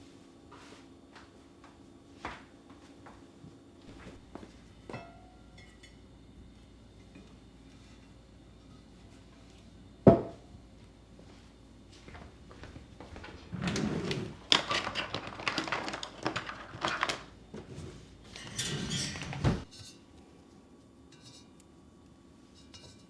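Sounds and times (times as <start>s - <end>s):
household handling clicks and knocks: 13.0s - 19.7s.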